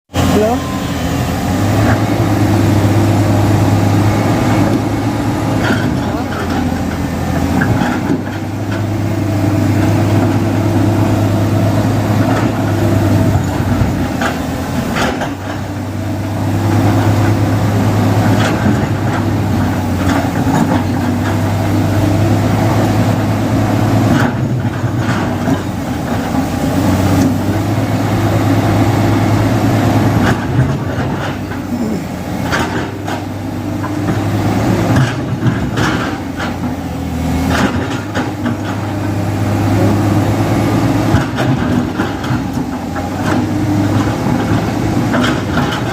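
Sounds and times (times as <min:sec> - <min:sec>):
heavy diesel engine running: 0:00.1 - 0:45.9
machine knocks and clanks: 0:05.4 - 0:10.6, 0:12.1 - 0:15.8, 0:16.6 - 0:22.0, 0:29.9 - 0:39.2, 0:41.0 - 0:45.9.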